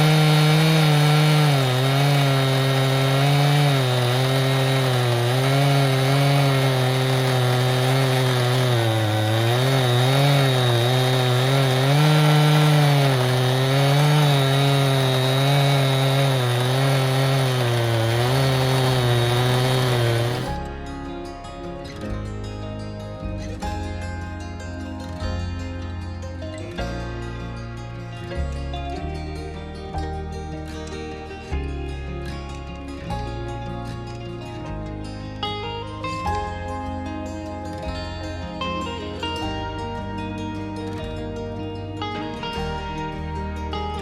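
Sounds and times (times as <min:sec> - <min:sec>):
chainsaw cutting log: 0:00.0 - 0:20.8.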